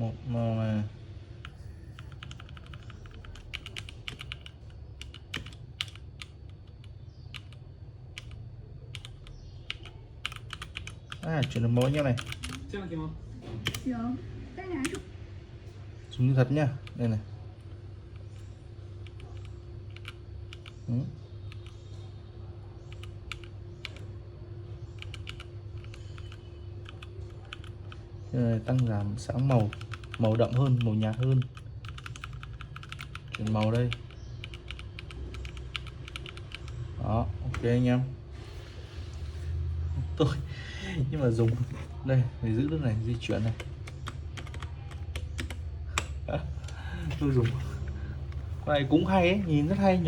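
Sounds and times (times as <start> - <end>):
steady low hum: 0.0 - 50.0
mechanical keyboard keys clicking: 2.0 - 7.6, 8.2 - 12.7, 19.0 - 20.8, 22.8 - 24.0, 24.9 - 28.0, 28.6 - 36.8, 42.7 - 46.2.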